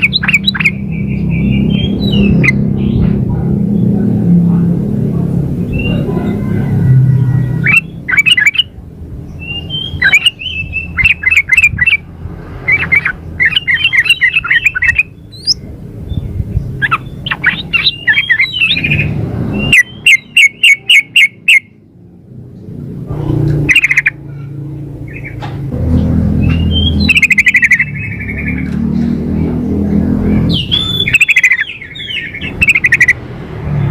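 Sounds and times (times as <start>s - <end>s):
bird chattering calls: 0.0s - 3.0s, 7.2s - 8.8s, 9.4s - 21.8s, 23.2s - 25.5s, 26.4s - 29.0s, 30.4s - 33.2s
steady low rumble: 0.0s - 19.6s, 21.9s - 33.9s.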